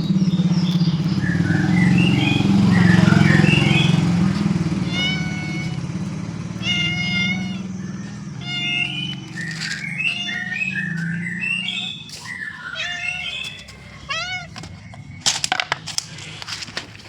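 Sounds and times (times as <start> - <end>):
motorcycle engine idling: 0.0 - 17.0
cat meowing: 2.7 - 14.9.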